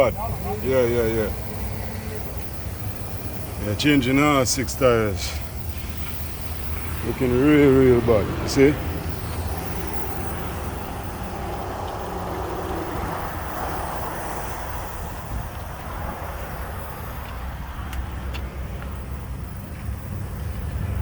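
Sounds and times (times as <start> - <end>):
low vehicle rumble: 0.0 - 21.0
faint clicks: 17.2 - 19.0.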